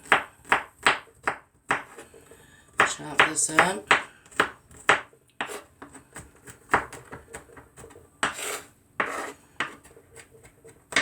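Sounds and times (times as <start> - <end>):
knife chopping garlic: 0.0 - 11.0
knife scraping: 4.3 - 6.6, 7.3 - 11.0.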